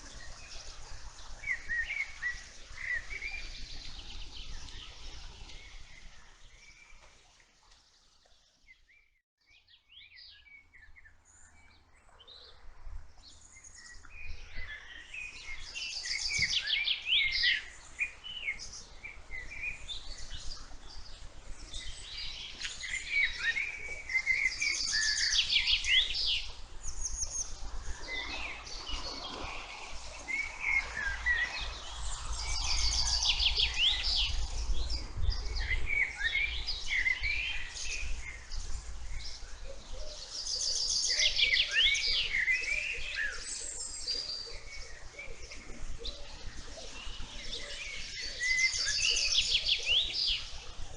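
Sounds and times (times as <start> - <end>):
songbirds chirping and trilling: 0.0 - 50.9.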